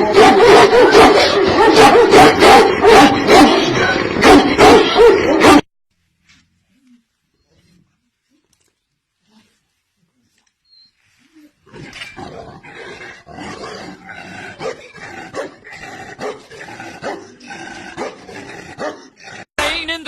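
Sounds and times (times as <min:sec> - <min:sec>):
dog barking: 0:00.0 - 0:05.7, 0:14.5 - 0:15.6, 0:16.2 - 0:19.2.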